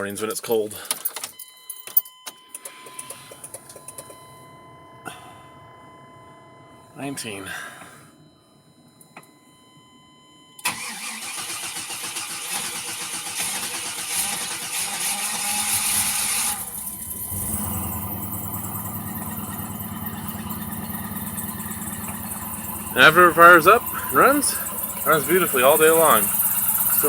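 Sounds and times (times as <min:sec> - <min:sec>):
starter cranking engine: 0:10.6 - 0:27.0
engine idling: 0:10.7 - 0:27.0
engine knocking: 0:12.4 - 0:27.0.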